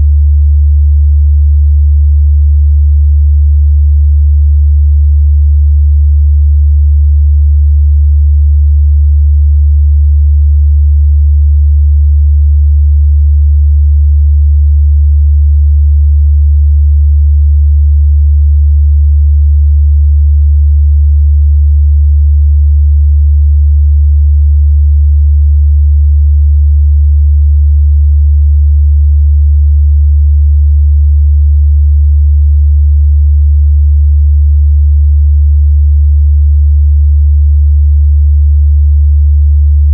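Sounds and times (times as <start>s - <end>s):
low sine-wave test tone: 0.0s - 39.9s.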